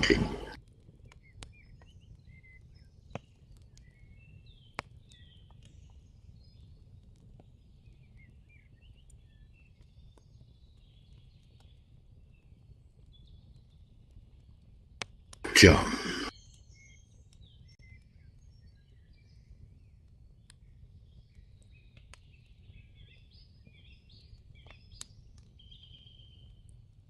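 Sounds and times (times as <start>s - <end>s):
low steady background noise: 0.0s - 17.3s
small birds chirping and trilling: 1.0s - 14.6s, 16.3s - 26.7s.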